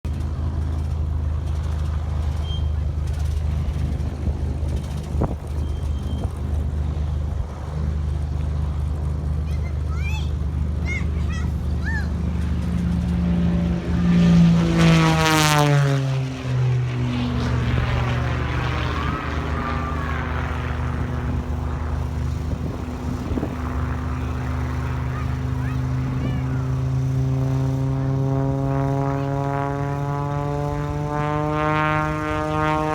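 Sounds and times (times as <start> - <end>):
steady low hum: 0.1 - 32.9
motor-like whine: 12.1 - 32.9.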